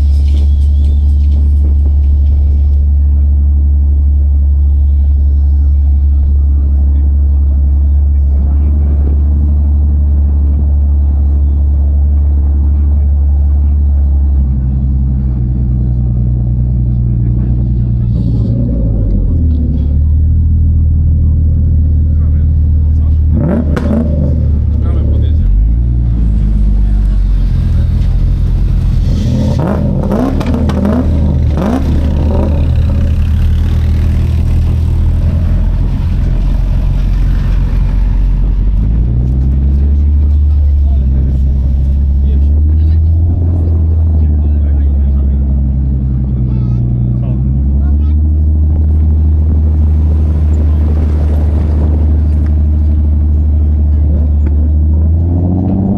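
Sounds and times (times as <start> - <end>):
car engine droning: 0.0 - 55.9
engine revving in quick blips: 23.3 - 25.4, 26.7 - 45.2.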